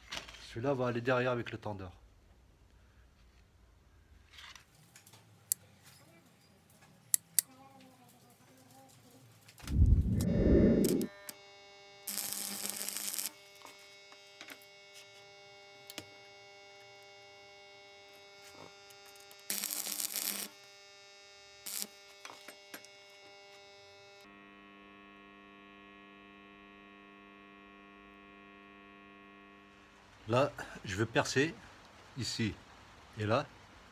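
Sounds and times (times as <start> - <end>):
electrical mains hum: 8.7 - 33.9.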